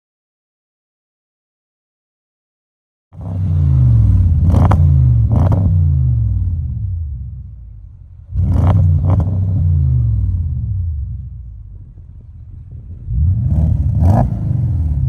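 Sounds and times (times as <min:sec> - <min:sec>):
car engine revving: 0:03.2 - 0:15.0.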